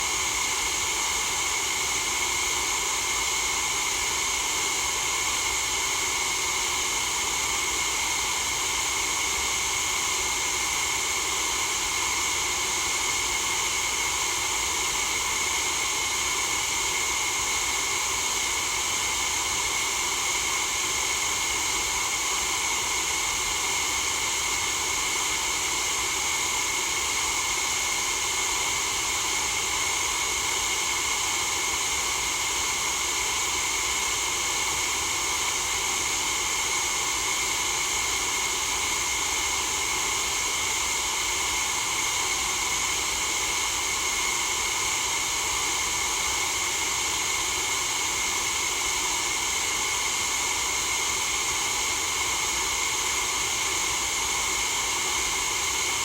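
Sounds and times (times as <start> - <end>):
white noise hiss: 0.0 - 1.7.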